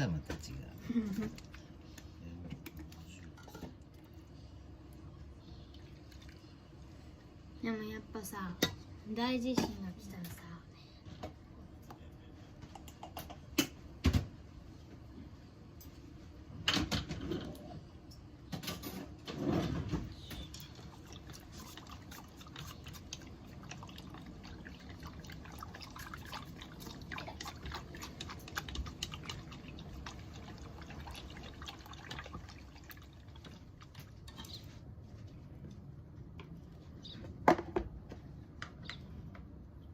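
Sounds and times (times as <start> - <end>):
liquid pouring and dripping: 20.5 - 34.7.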